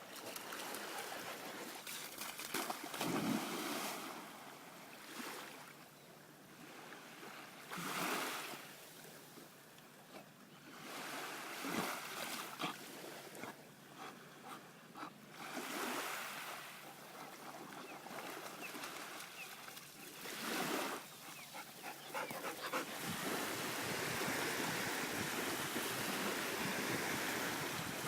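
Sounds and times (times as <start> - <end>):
water splashing and lapping: 0.0 - 5.7, 10.8 - 28.0
wind on microphone: 22.2 - 28.0.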